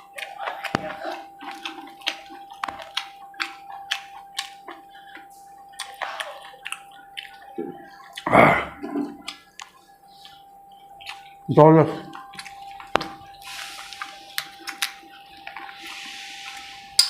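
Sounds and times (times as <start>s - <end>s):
wet chewing and lip-smacking: 0.0s - 8.3s, 9.0s - 17.0s
loud mouth noise: 8.2s - 9.2s.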